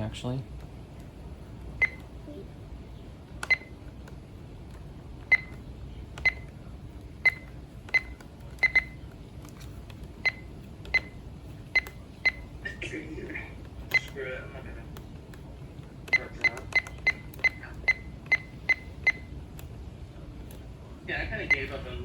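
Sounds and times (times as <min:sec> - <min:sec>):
button-press beeps: 0:01.8 - 0:02.1, 0:03.4 - 0:03.8, 0:05.3 - 0:05.6, 0:06.2 - 0:06.5, 0:07.2 - 0:09.0, 0:10.2 - 0:11.2, 0:16.1 - 0:19.3.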